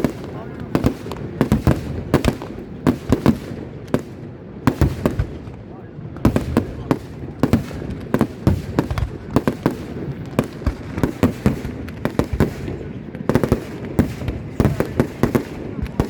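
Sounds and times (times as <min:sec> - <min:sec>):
fireworks bursting: 0:00.0 - 0:16.0.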